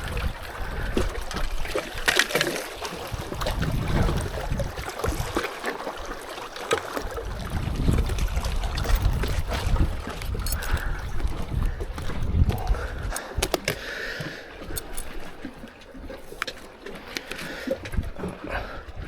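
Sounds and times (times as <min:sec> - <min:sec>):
wind buffeting microphone: 0:00.0 - 0:02.0, 0:02.9 - 0:05.5, 0:07.0 - 0:16.2, 0:17.8 - 0:19.0
water trickling and lapping: 0:00.0 - 0:19.0
handling clicks and taps: 0:10.2 - 0:10.9, 0:11.9 - 0:13.8.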